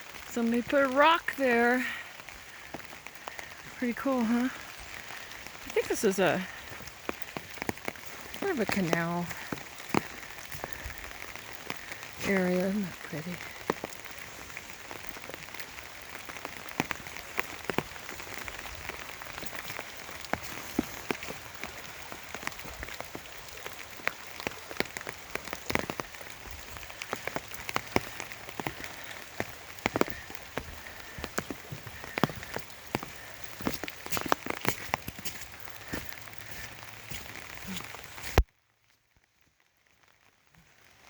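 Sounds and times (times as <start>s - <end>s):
raindrops tapping on umbrella: 0.0s - 41.0s
steady hiss of rain: 0.0s - 41.0s.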